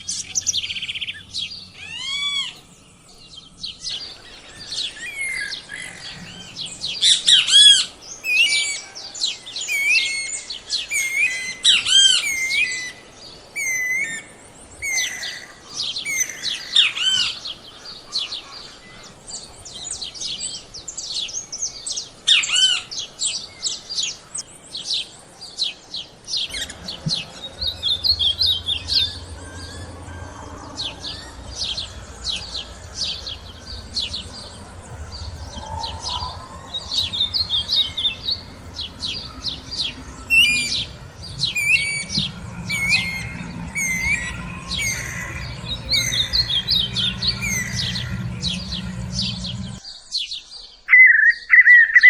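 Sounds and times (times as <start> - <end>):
birds singing dawn chorus: 0.0 - 52.0
low steady hum: 26.4 - 49.8.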